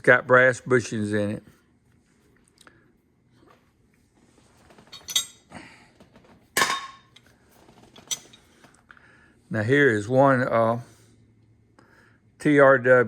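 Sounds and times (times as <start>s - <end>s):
metal tools clinking: 4.9s - 5.4s.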